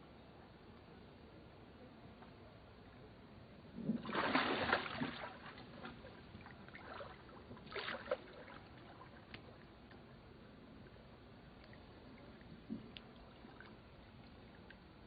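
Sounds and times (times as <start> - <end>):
water splashing: 3.8 - 9.7.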